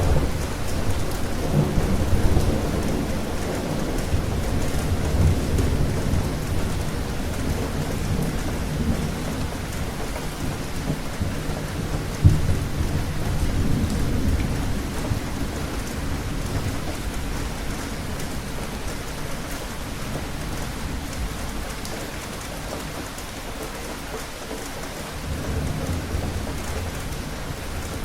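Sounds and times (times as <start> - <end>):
thunder crack: 0.0 - 18.7
rolling thunder: 0.0 - 21.8
rain falling: 0.0 - 28.0.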